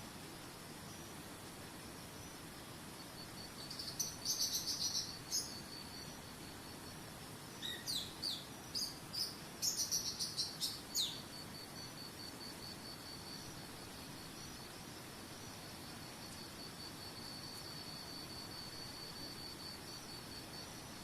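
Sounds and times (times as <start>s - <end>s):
high-pitched insect trill: 0.4s - 21.0s
songbird chirping: 3.2s - 6.7s, 7.5s - 11.9s.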